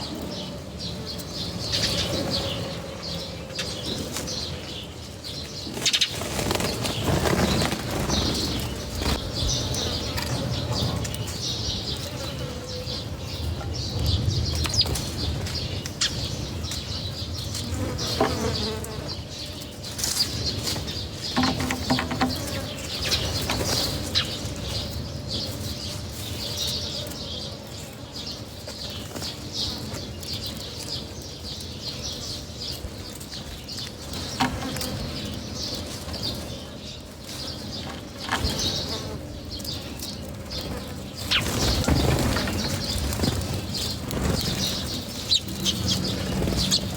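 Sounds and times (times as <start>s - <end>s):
birds flapping wings: 5.4s - 12.1s, 37.2s - 46.9s.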